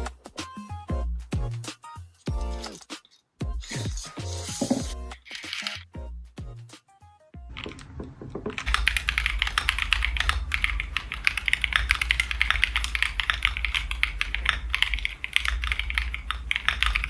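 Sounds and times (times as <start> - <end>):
mechanical keyboard typing: 4.4 - 5.8, 7.6 - 17.0
low steady hum: 7.5 - 17.0.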